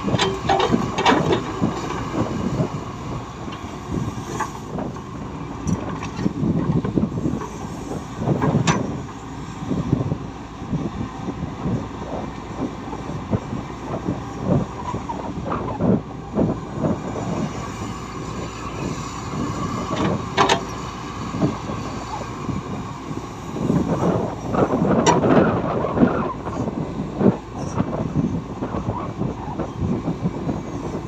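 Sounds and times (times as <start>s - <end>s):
diesel engine running: 0.0s - 31.0s
metal knocks and clanks: 0.2s - 1.5s.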